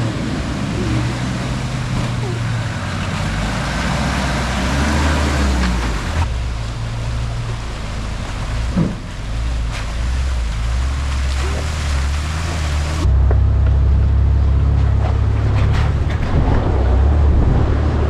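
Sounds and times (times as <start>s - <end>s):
truck knocking over rough trail: 0.0s - 6.7s, 7.4s - 18.0s
truck engine running: 0.0s - 18.0s
wind noise: 14.8s - 18.0s.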